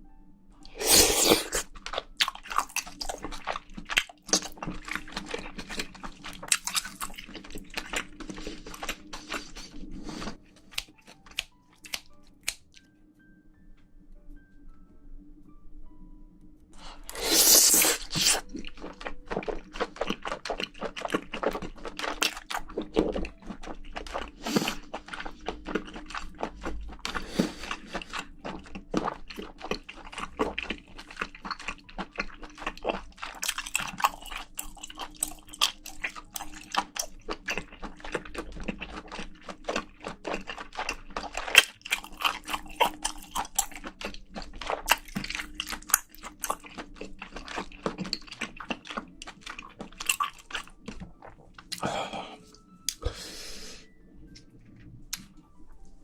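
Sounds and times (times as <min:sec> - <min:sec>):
wet chewing and crunching: 0:00.6 - 0:12.8, 0:16.8 - 0:53.2, 0:54.2 - 0:56.0.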